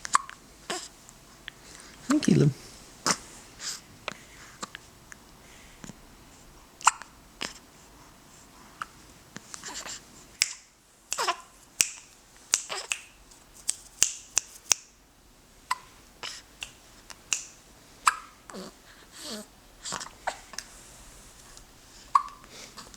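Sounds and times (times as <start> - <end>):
baby hiccuping: 6.8 - 7.1, 22.1 - 22.4.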